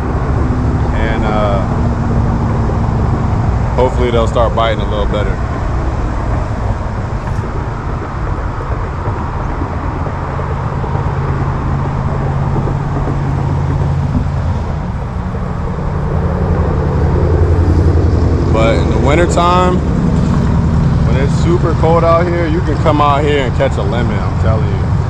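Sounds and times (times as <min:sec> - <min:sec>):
deep engine note: 0:00.0 - 0:25.0
road traffic rumble: 0:00.0 - 0:25.0.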